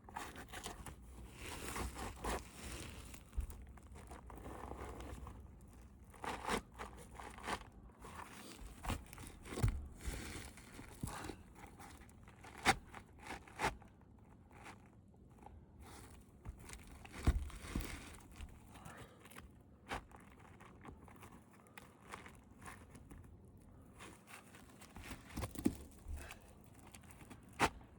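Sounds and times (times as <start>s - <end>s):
shingles crunching and tearing: 16.5s - 23.1s, 24.0s - 27.9s.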